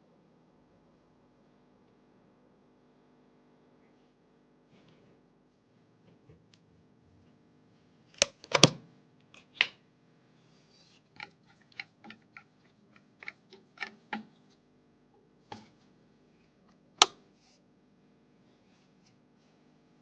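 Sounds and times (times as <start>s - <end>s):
computer parts clicking and knocking: 8.2s - 8.8s.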